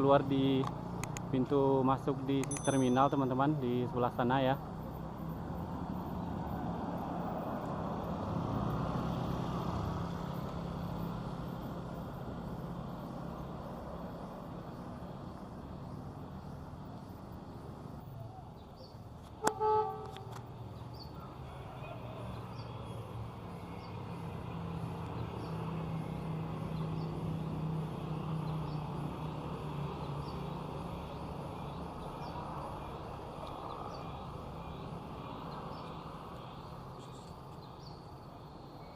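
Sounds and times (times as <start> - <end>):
diesel bus engines humming: 0.0 - 38.9
horn toot: 19.4 - 20.3.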